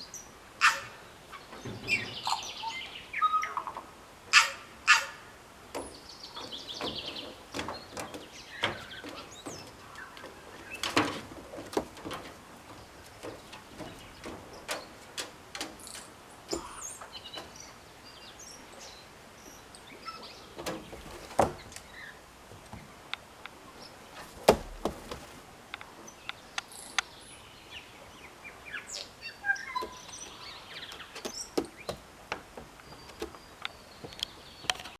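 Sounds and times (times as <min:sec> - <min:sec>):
sharp clicks and knocks: 0:05.7 - 0:17.6, 0:20.6 - 0:21.9, 0:29.8 - 0:34.9.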